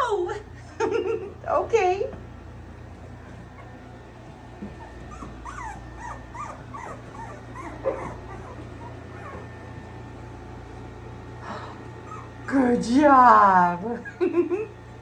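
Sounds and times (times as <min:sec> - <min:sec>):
puppies whimpering and squealing: 0:03.0 - 0:10.9, 0:11.6 - 0:13.0.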